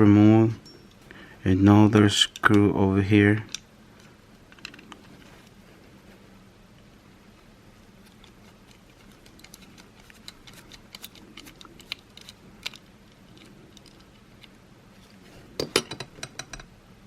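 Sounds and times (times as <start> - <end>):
screwdriver and plastic parts clicking: 8.1 - 14.6.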